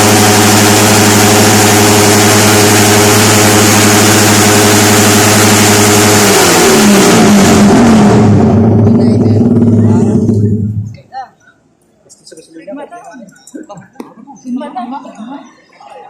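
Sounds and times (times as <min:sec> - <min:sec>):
engine revving through loud exhaust: 0:00.0 - 0:11.0.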